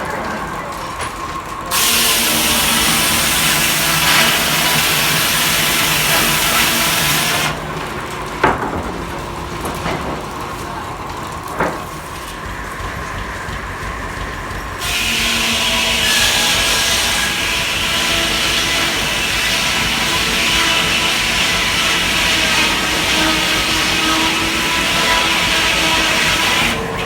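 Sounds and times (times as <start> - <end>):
sawmill humming: 0.0 - 27.0
saw cutting through log: 1.7 - 7.6, 14.6 - 27.0.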